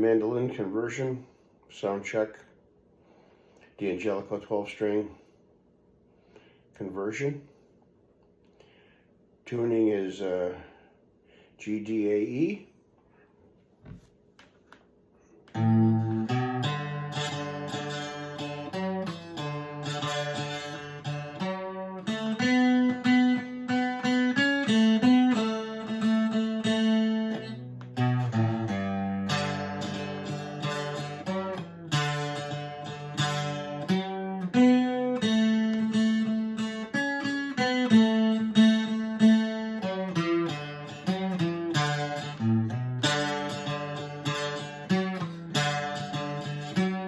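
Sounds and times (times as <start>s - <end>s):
mandolin picking a folk tune: 15.5s - 47.0s.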